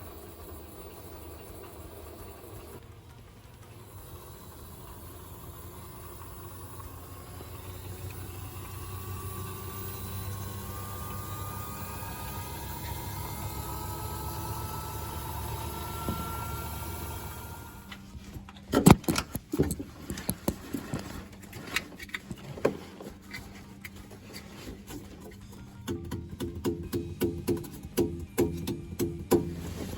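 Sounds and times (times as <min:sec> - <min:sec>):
washing machine drum humming: 0:00.0 - 0:18.0.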